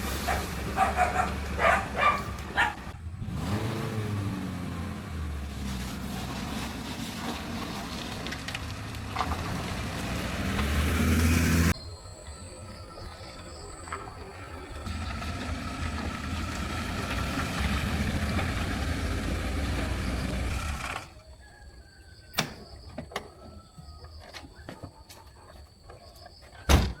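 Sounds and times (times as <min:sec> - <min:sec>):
vehicle engine rumbling: 0:00.0 - 0:21.4.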